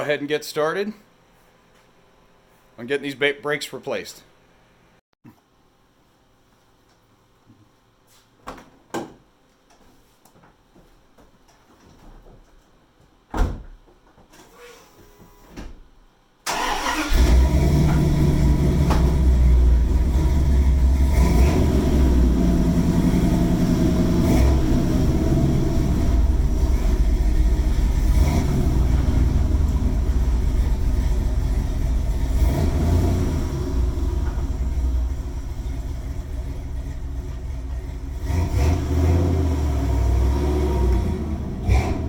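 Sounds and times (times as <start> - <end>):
vehicle engine starting and running: 16.5 - 42.0.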